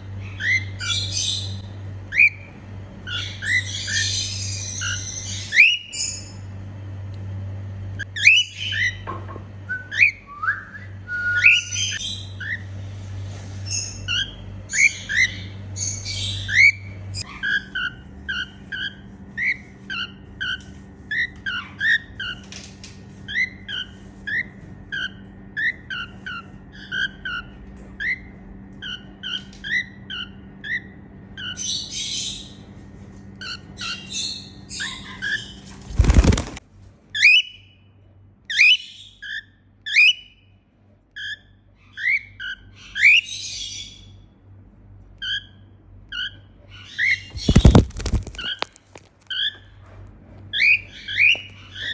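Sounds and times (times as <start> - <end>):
cockatiel chirping: 3.1 - 6.3, 13.8 - 22.4, 37.2 - 37.8, 45.2 - 48.6.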